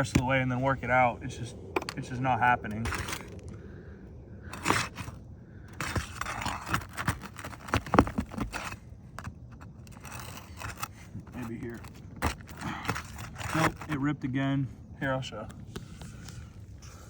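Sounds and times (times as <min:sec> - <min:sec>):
flat bar scraping under shingles: 0:00.0 - 0:03.6, 0:04.4 - 0:14.3
shingles tearing: 0:01.8 - 0:03.6, 0:04.4 - 0:14.1.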